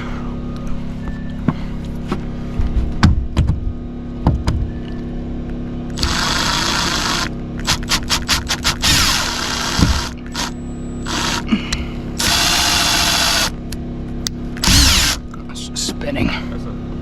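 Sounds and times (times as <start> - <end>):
steady low hum: 0.0 - 17.0
power driver whirring: 5.9 - 11.5, 12.2 - 13.6, 14.6 - 15.3.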